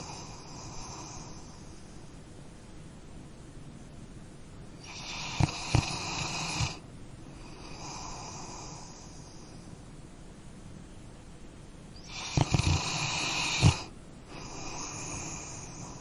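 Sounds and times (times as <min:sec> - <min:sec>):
dog snoring: 0:00.0 - 0:02.0, 0:04.8 - 0:06.8, 0:07.4 - 0:09.5, 0:12.0 - 0:16.0
soft dog breath: 0:00.0 - 0:02.2.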